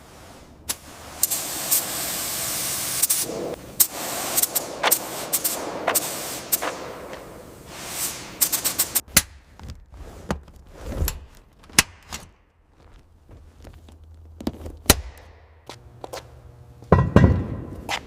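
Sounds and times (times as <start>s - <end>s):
hiss: 0.0s - 9.0s.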